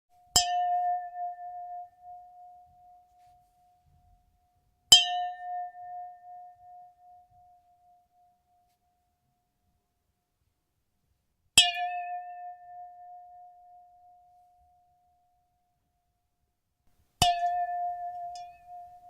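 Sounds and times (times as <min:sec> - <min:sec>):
glass struck ringing: 0:17.2 - 0:19.0.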